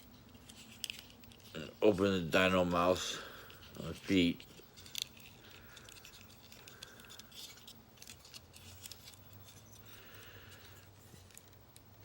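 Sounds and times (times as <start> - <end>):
plastic toy parts clicking: 4.5 - 9.6.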